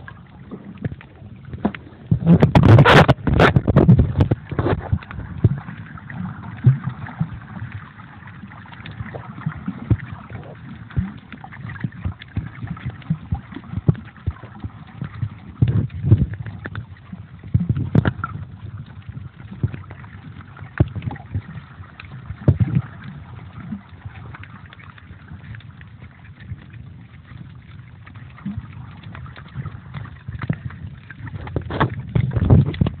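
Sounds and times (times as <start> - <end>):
muffled underwater sound: 0.0 - 33.0
muffled water sloshing: 0.0 - 33.0
waterproof pouch knocks and scrapes: 2.1 - 5.0, 31.4 - 33.0.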